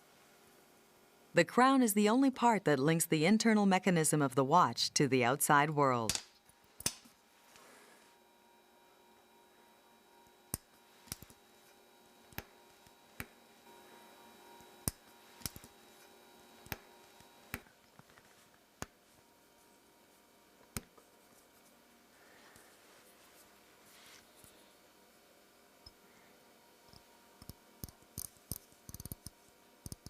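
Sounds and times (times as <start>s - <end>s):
faint steady hum: 0.0s - 30.0s
metal tools clicking on watch parts: 27.4s - 29.3s.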